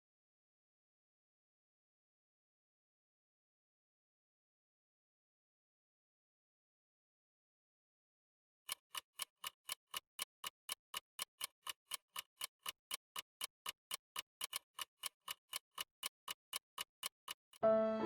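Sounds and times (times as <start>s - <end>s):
steady ticking: 8.7s - 17.6s.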